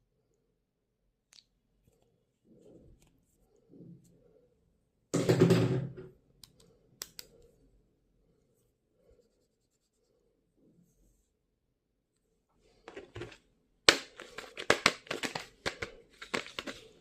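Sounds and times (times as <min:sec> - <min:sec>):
faint handling noise: 0:12.1 - 0:17.0
scratchy paper rustle: 0:14.2 - 0:17.0.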